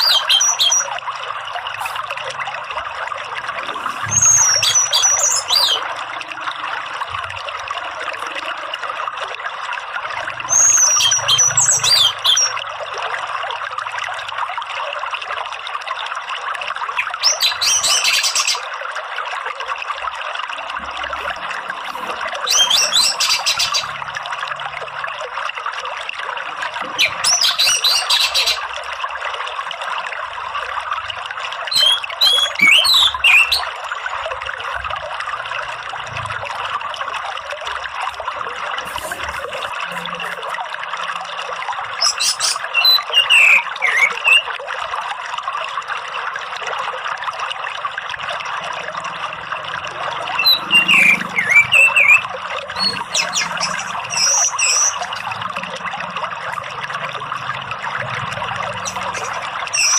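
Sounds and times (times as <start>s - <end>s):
thrush calling: 0.0s - 0.9s, 3.7s - 6.0s, 10.5s - 12.5s, 17.0s - 18.7s, 21.2s - 24.0s, 26.9s - 28.7s, 31.7s - 33.8s, 38.8s - 40.6s, 42.0s - 44.5s, 50.2s - 55.7s, 58.7s - 59.9s
running water: 0.0s - 59.9s.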